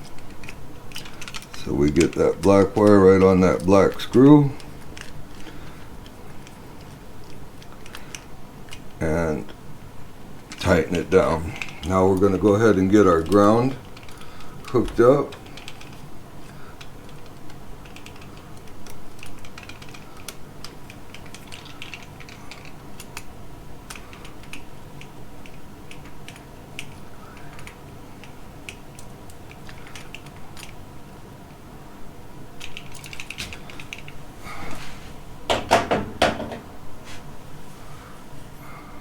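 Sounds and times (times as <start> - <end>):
clicks and taps of wiring work: 0.0 - 9.6, 35.5 - 36.7.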